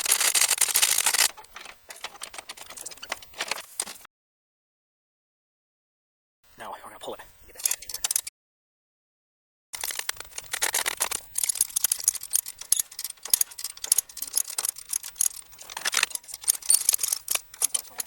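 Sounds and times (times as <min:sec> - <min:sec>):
hand ratchet clicking: 0:00.0 - 0:01.4, 0:07.6 - 0:08.2, 0:09.8 - 0:18.0.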